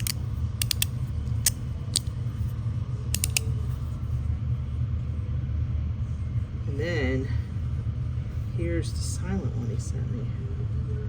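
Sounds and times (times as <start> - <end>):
magnetic fidget slider clicking: 0.0 - 2.1, 3.1 - 3.5
steady low rumble: 0.0 - 11.0.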